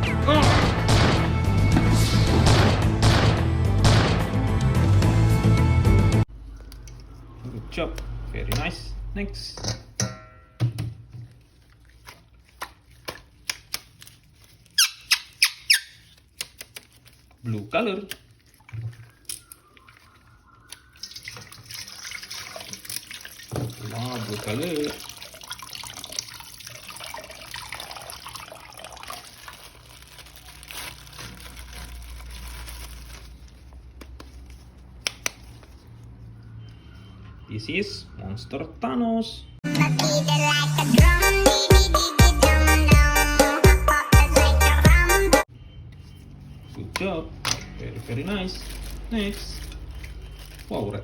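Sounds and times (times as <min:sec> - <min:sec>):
plastic rubbing or squeaking: 0:14.2 - 0:17.2, 0:48.0 - 0:51.0
tap water running and splashing: 0:20.7 - 0:29.9.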